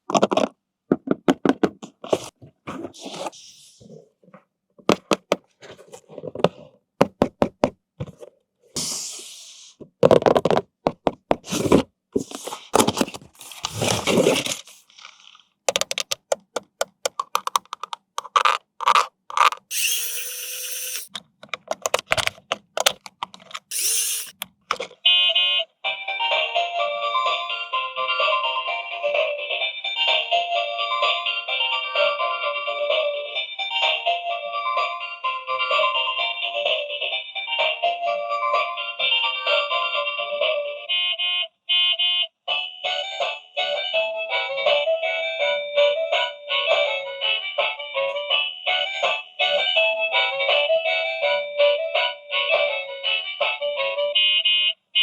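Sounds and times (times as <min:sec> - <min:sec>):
plastic clicks knocks and scrapes: 0:00.0 - 0:03.0, 0:09.9 - 0:19.7, 0:21.1 - 0:23.7
small motor whirring: 0:19.7 - 0:21.1, 0:23.7 - 0:24.4.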